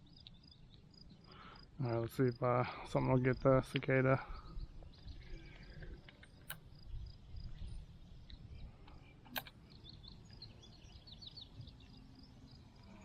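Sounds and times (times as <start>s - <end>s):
sharp clicks: 8.3s - 9.6s.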